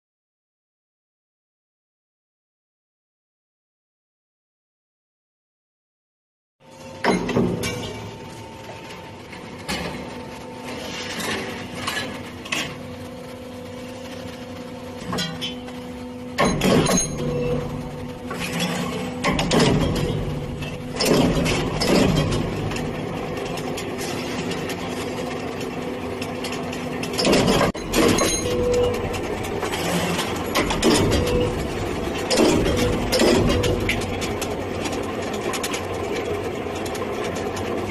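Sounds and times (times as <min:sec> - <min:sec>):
machine humming: 0:06.6 - 0:37.9
loud mechanical clattering: 0:14.0 - 0:37.9
sharp metallic clanks: 0:16.4 - 0:17.7, 0:26.4 - 0:35.8.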